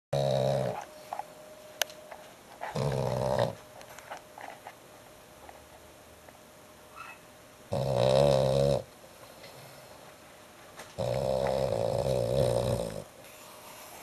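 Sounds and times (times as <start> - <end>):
dog snoring loudly: 0.2 - 0.8, 2.7 - 3.6, 7.7 - 8.9, 11.0 - 13.1.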